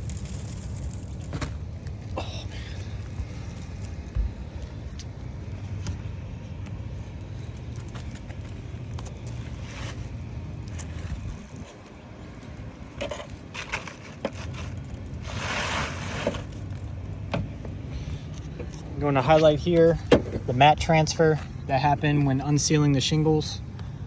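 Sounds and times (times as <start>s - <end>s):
steady low rumble: 0.0s - 24.0s
rough tearing scrape: 9.4s - 10.1s, 13.1s - 16.7s.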